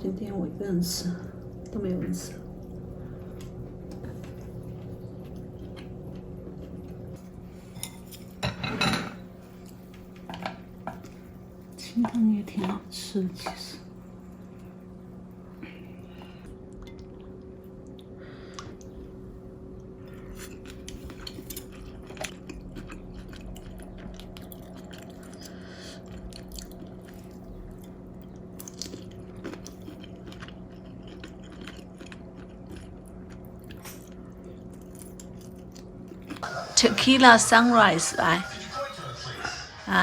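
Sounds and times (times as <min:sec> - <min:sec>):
low hum: 0:00.0 - 0:12.0
dishes and utensils clicking: 0:07.7 - 0:09.2
person chewing: 0:20.1 - 0:36.6.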